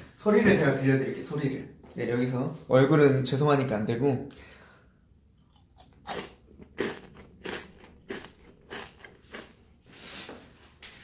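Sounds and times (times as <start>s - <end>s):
crunchy chewing: 5.4s - 10.2s.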